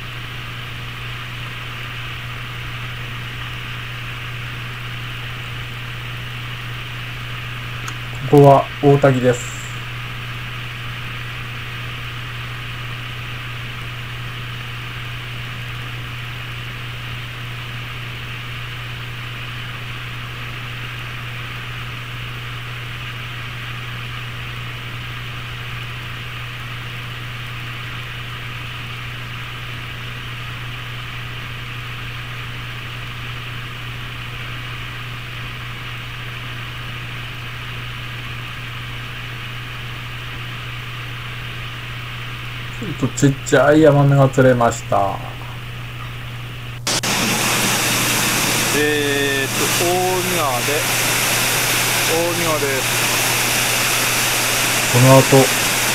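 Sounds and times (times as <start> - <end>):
waterfall rushing: 46.9 - 55.9.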